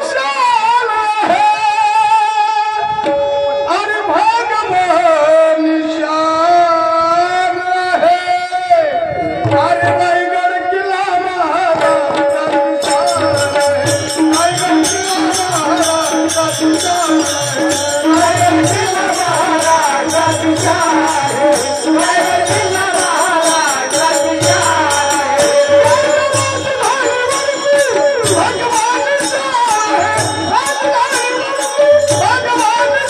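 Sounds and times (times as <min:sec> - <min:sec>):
folk song singing: 0:04.0 - 0:33.0
jingling percussion: 0:11.6 - 0:33.0.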